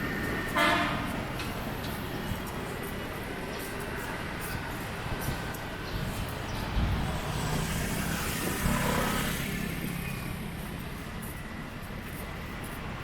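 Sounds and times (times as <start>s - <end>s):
street traffic: 0.0s - 13.0s
vehicle passing close by: 6.2s - 10.8s.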